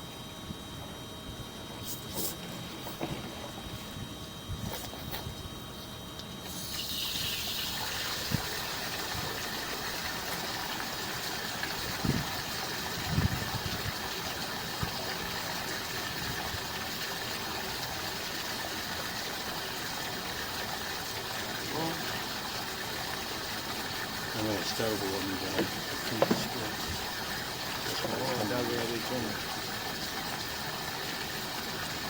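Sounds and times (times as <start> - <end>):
water running: 6.5 - 32.0.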